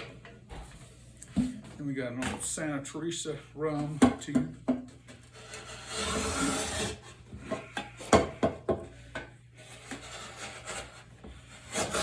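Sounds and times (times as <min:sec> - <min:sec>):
knife scraping cardboard: 0:05.4 - 0:07.2, 0:09.6 - 0:12.0.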